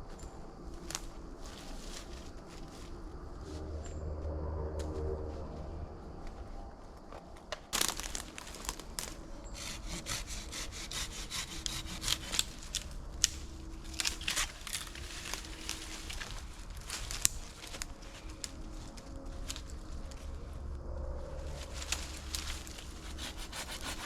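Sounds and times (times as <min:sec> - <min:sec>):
hand saw cutting wood: 0:09.5 - 0:13.4, 0:23.0 - 0:24.0.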